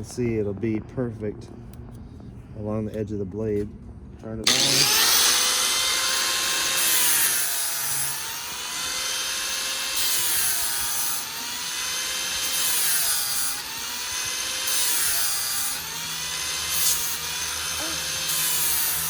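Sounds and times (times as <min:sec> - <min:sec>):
drill motor whine: 0:04.4 - 0:19.0
grinding stone on metal blade: 0:04.5 - 0:19.0.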